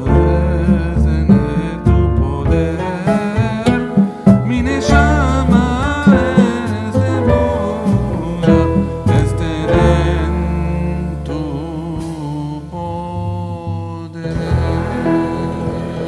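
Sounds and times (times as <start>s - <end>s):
person singing: 0.0s - 16.0s
plucked string instrument: 0.0s - 16.0s.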